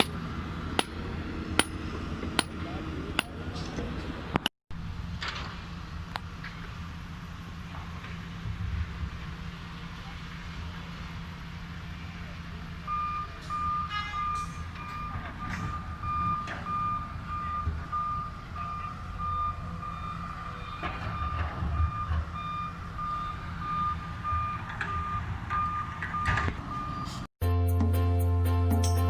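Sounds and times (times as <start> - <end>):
diesel engine running: 0.0 - 27.2
reversing alarm beeping: 12.8 - 27.3.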